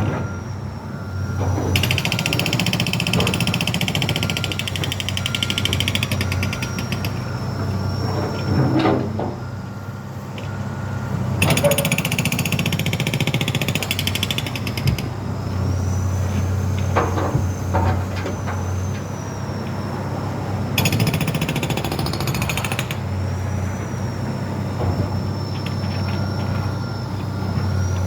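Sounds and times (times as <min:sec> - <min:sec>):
heavy engine running: 0:00.0 - 0:28.0
jackhammer hammering: 0:01.7 - 0:07.2, 0:11.4 - 0:15.1, 0:20.8 - 0:23.0.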